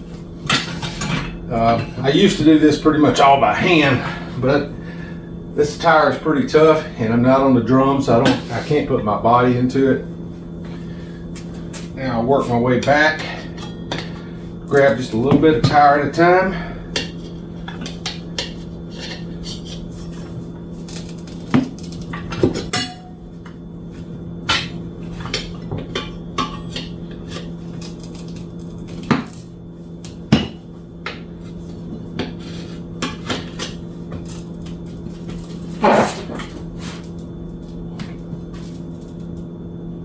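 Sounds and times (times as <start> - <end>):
steady low hum: 0.0 - 40.0.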